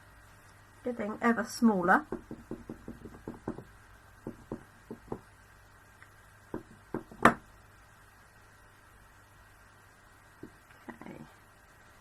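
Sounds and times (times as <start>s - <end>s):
rubber stamp tapping ink pad: 2.1s - 5.3s, 6.5s - 7.4s
stamp knocking onto paper: 2.1s - 5.3s, 6.5s - 7.5s.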